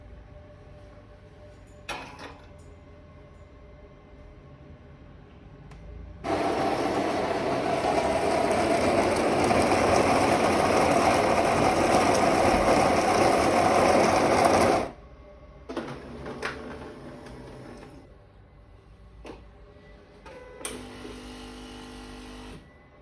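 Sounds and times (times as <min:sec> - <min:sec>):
coffee grinder running: 0:06.2 - 0:15.0.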